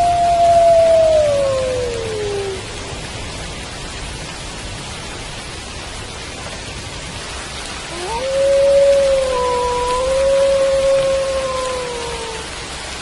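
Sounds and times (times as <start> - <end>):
wolf howling: 0.0 - 2.7, 7.9 - 12.5
steady rain: 0.0 - 13.0.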